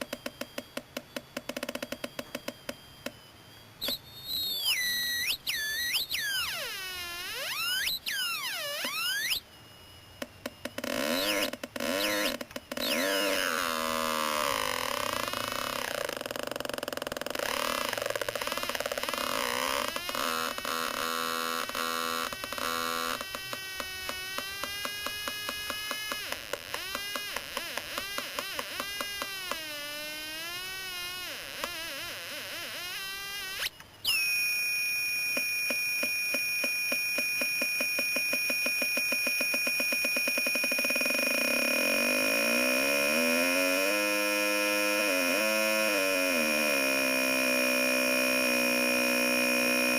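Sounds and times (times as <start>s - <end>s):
warbling synthesized tones: 0.0s - 34.8s
high-pitched electronic tone: 0.0s - 49.9s
pulsing clicks: 0.0s - 49.9s
ticking pulse: 0.0s - 49.9s.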